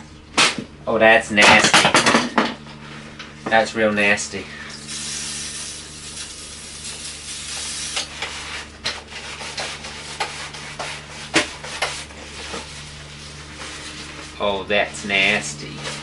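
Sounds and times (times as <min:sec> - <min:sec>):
steady low hum: 0:00.0 - 0:16.0
hands rubbing and scraping: 0:06.9 - 0:14.4.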